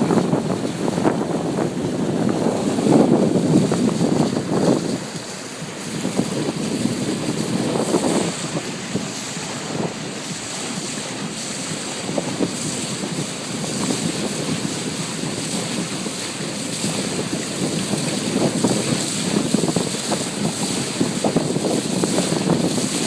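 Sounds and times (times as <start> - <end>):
water rushing past boat hull: 0.0 - 23.0
wind buffeting microphone: 0.0 - 23.0.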